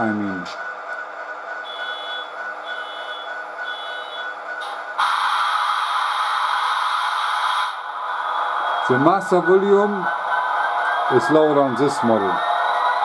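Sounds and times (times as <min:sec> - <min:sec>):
model locomotive engine rumble: 0:07.8 - 0:13.0.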